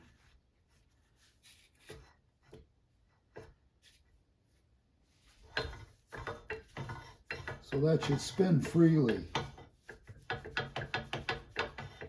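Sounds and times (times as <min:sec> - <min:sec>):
metal parts rubbing and tapping: 0:05.4 - 0:12.0.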